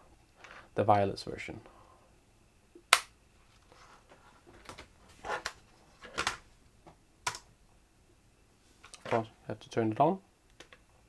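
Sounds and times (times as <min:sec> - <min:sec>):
plastic keyboard clicks and knocks: 0:04.6 - 0:06.4, 0:07.3 - 0:07.5.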